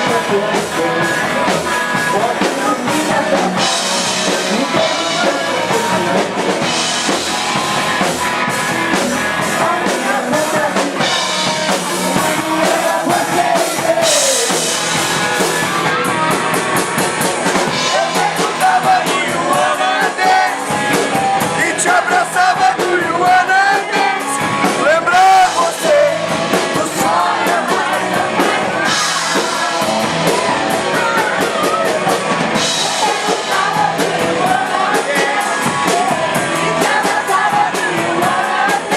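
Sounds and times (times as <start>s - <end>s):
person singing: 0.0s - 6.7s, 8.9s - 14.8s, 17.7s - 38.9s
drum kit with cymbals: 0.0s - 38.9s
guitar: 0.0s - 38.9s
rock band playing live: 0.0s - 38.9s.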